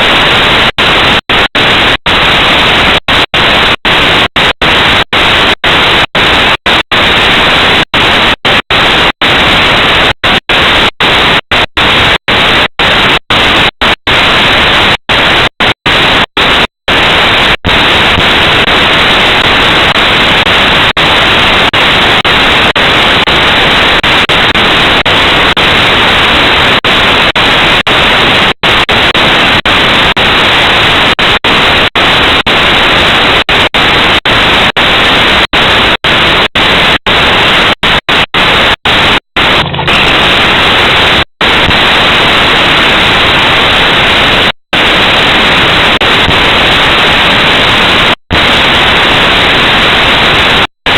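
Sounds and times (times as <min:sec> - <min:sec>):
loud static hiss: 0:00.0 - 0:50.9.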